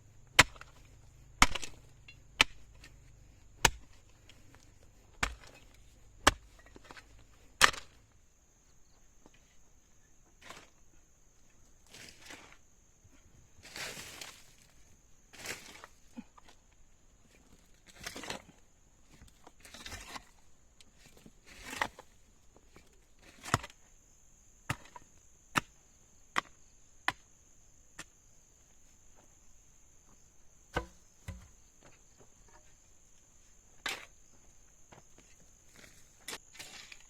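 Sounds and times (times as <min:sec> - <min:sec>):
insects droning: 0:00.0 - 0:37.0.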